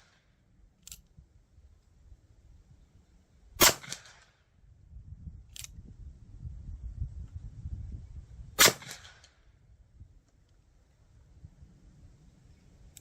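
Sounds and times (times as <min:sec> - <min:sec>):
sharp click: 0:05.5 - 0:05.8.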